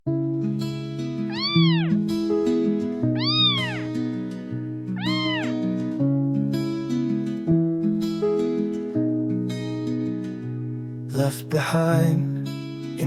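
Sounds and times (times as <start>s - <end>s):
gentle plucked string music: 0.1s - 13.0s
kitten meowing: 1.3s - 2.1s, 3.0s - 4.0s, 4.9s - 5.7s.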